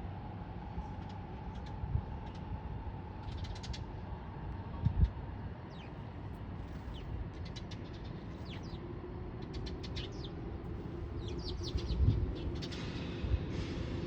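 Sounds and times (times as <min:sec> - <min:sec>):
sparrows chirping: 0:05.7 - 0:13.2
steady low rumble: 0:08.1 - 0:14.0.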